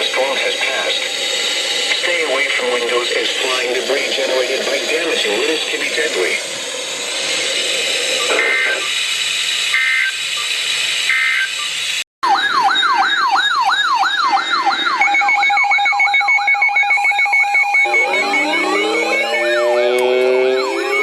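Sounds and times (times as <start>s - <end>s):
steady tone with pulsing beeps: 0.0s - 21.0s
radio static: 1.9s - 6.6s, 7.3s - 9.0s, 17.8s - 21.0s
two-tone digital data bursts: 8.0s - 9.0s, 9.8s - 10.5s, 11.1s - 11.8s, 14.4s - 21.0s
rising siren tones: 12.2s - 21.0s
warbling electronic alert tone: 12.2s - 21.0s.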